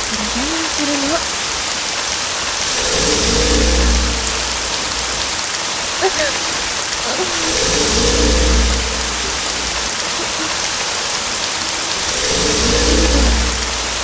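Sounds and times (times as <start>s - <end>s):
steady rain: 0.0s - 14.0s
deep rumble: 2.6s - 5.3s, 7.3s - 10.0s, 12.0s - 14.0s.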